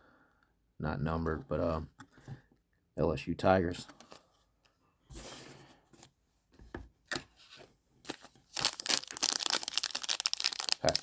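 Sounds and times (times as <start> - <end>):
foil wrapper crinkling and tearing: 8.1 - 11.0.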